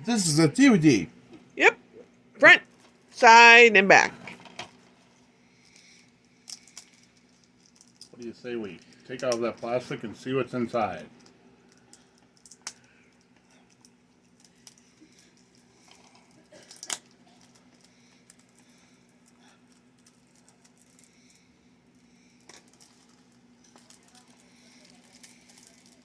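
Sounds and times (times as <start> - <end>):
faint steady hum: 0.0 - 26.0
fingers crinkling plastic shrink-wrap: 22.5 - 26.0.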